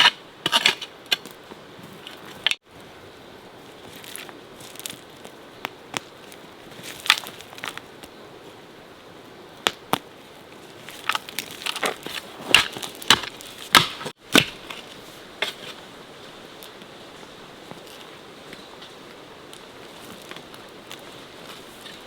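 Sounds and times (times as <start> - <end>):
sharp knocks and cracks: 11.0 - 14.8.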